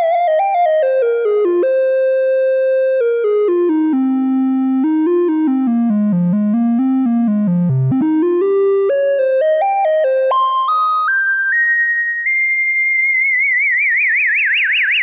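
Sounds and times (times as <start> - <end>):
synthesizer flute lead melody: 8.0 - 15.0.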